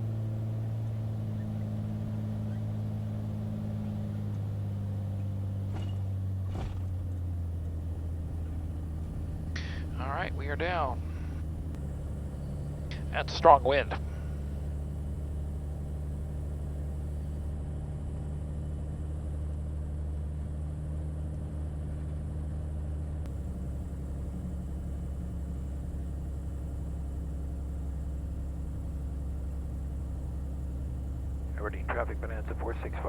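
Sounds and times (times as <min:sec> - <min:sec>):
plane piston engine running: 0:06.6 - 0:17.5, 0:23.3 - 0:31.7.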